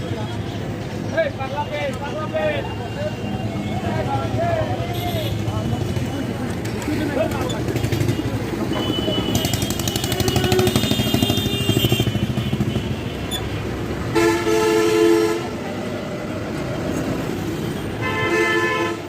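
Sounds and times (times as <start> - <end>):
low traffic hum: 0.0 - 19.0
vehicle horn: 8.0 - 15.6, 17.8 - 19.0.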